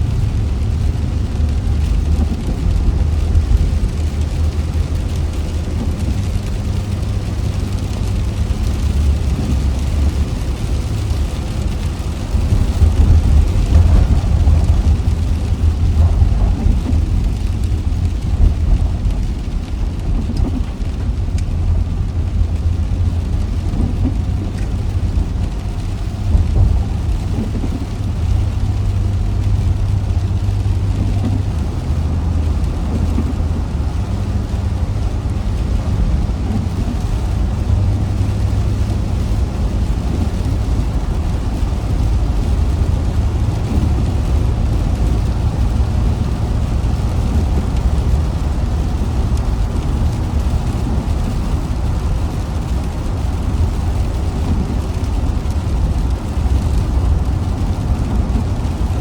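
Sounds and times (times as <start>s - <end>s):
car engine and road rumble: 0.0s - 59.0s
rain on car: 0.0s - 59.0s
tyres hissing on wet road: 0.0s - 59.0s.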